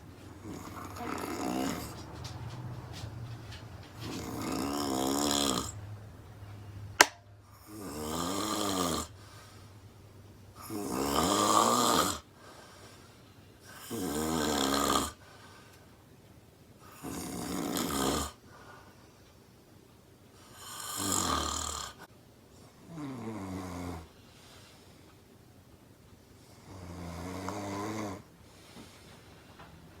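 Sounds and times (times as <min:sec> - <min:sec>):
woman snoring loudly: 0:00.4 - 0:02.0, 0:04.1 - 0:05.8, 0:07.6 - 0:09.2, 0:10.6 - 0:12.3, 0:13.7 - 0:15.2, 0:16.9 - 0:18.4, 0:20.5 - 0:22.1, 0:22.9 - 0:24.1, 0:26.7 - 0:28.3
sharp click: 0:07.0 - 0:07.2.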